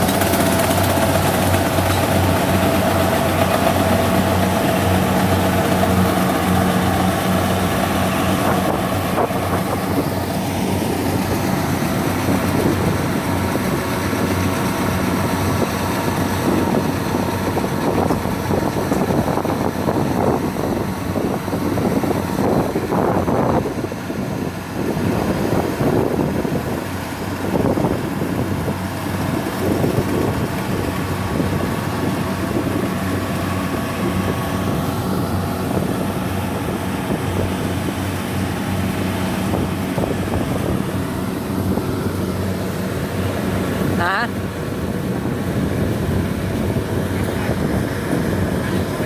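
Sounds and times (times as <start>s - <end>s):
combine harvester diesel engine: 0.0s - 49.0s.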